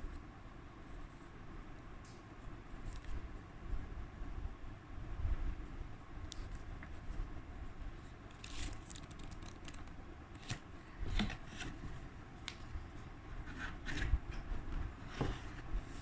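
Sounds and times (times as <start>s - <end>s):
hands handling packaging: 8.3s - 12.7s.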